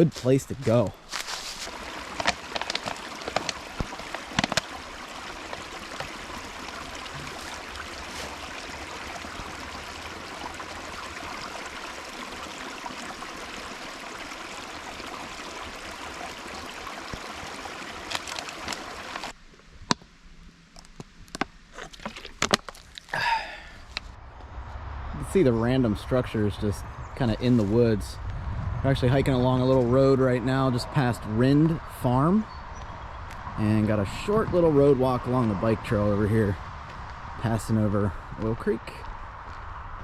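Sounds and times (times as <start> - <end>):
creek water flowing: 0.0 - 19.4.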